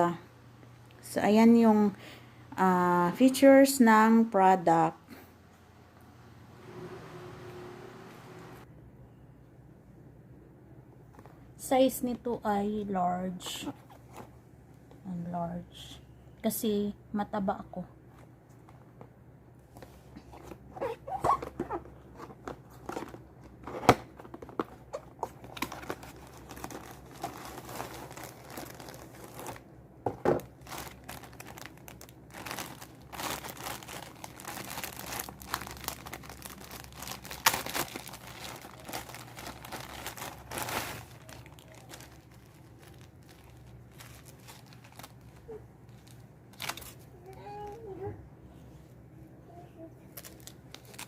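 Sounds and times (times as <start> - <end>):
plastic packaging crinkling: 22.1 - 29.7, 30.4 - 47.1, 50.1 - 51.0.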